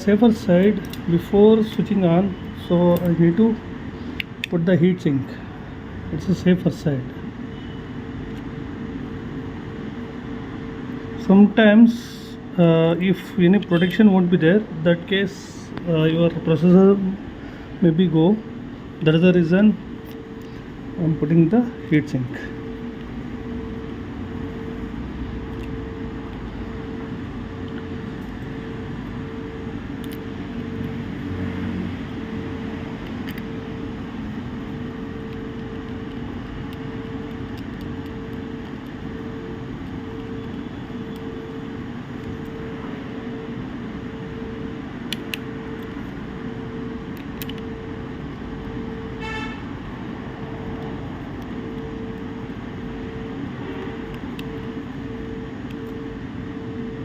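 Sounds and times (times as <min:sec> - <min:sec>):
background hum: 0:00.0 - 0:57.0
traffic noise: 0:00.0 - 0:57.0
short horn toot: 0:49.2 - 0:49.7.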